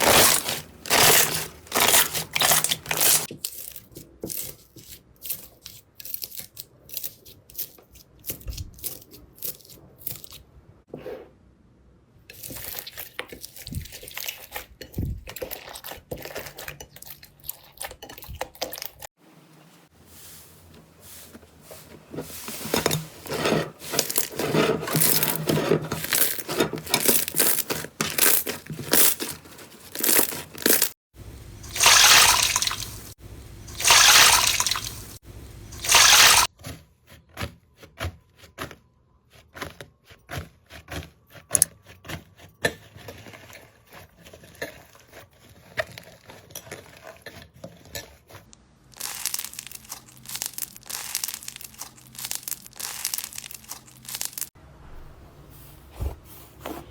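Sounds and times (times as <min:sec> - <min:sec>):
slime squishing and popping: 0:49.0 - 0:54.5.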